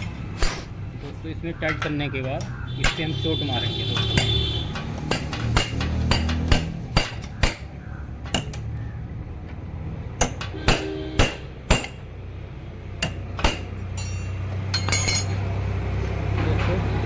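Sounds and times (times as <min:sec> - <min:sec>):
hammer striking metal puller: 0:03.9 - 0:08.7, 0:10.2 - 0:12.0, 0:13.0 - 0:15.4.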